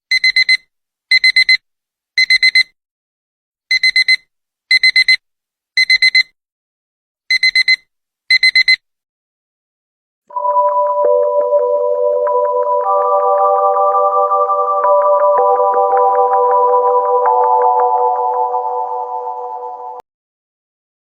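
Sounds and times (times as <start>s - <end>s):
alarm clock beeping: 10.3s - 20.0s
synthesizer music: 10.3s - 20.0s.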